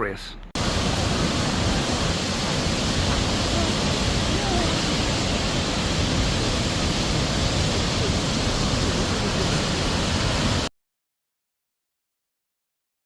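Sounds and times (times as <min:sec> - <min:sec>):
wind and water rushing: 0:00.6 - 0:10.7
wind rumbling on microphone: 0:00.6 - 0:10.7.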